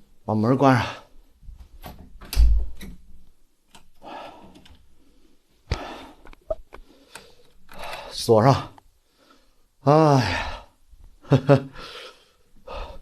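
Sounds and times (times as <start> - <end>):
door thudding shut: 1.8 - 2.8
door and latch rattling: 1.8 - 3.0.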